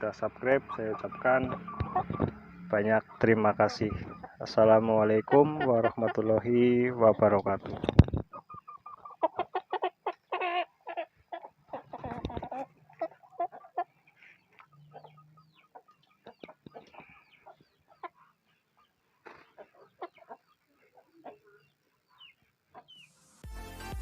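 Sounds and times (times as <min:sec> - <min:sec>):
chicken clucking softly: 0:00.1 - 0:23.1
music: 0:23.1 - 0:24.0.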